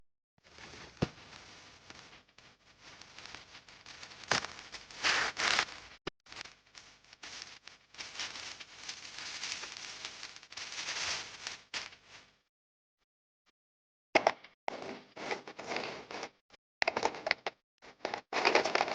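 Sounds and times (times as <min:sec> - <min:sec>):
packaging crinkling and rustling: 0:02.8 - 0:11.9.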